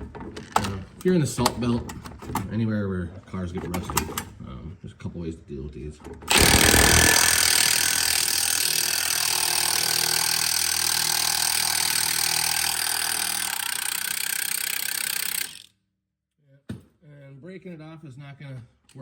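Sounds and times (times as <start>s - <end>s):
impact wrench hammering: 6.3s - 15.7s.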